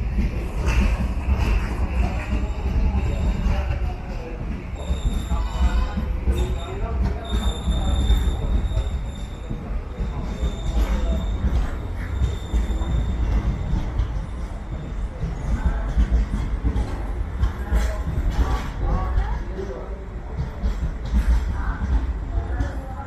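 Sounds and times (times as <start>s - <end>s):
train rolling on rails: 0.0s - 23.0s.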